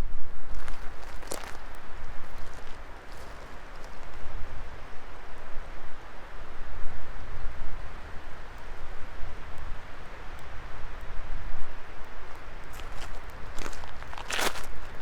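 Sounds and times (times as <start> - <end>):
fire crackles: 0.3 - 5.6, 7.7 - 15.0
low uneven rumble: 0.4 - 5.6, 11.6 - 15.0.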